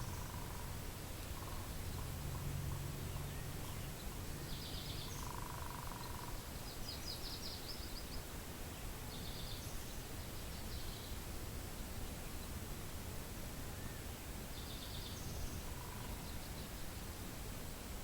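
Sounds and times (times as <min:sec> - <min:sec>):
songbird trilling: 0:00.0 - 0:00.7, 0:01.4 - 0:02.4, 0:03.2 - 0:07.8, 0:14.6 - 0:16.6
low buzzy bird call: 0:00.0 - 0:03.9, 0:14.8 - 0:16.8.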